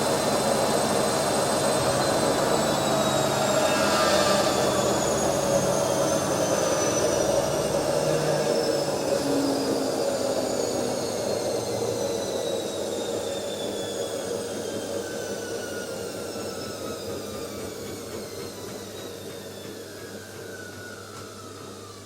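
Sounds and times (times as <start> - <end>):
washing machine churning: 0.0 - 14.8
washing machine motor whine: 0.0 - 22.0.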